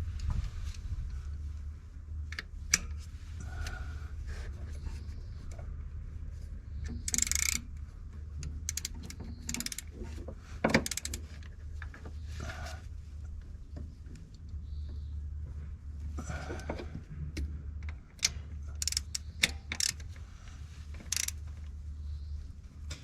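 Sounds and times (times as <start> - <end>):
steady low hum: 0.0 - 23.0
tools clicking and knocking: 6.8 - 7.7, 8.4 - 12.0, 17.8 - 20.2, 21.0 - 21.4
small ticks: 21.1 - 21.4.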